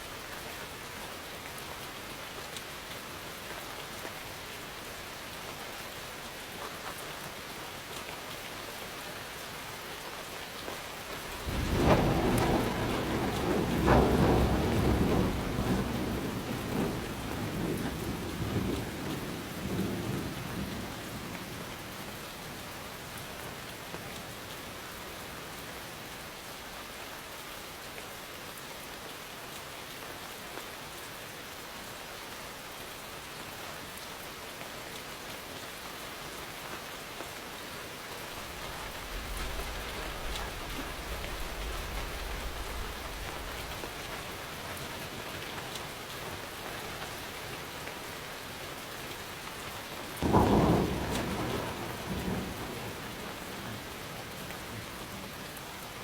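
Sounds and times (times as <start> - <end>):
heavy rain hissing: 10.8 - 22.5, 38.2 - 56.0
rolling thunder rumble: 11.2 - 21.9, 38.3 - 45.2, 50.2 - 55.4.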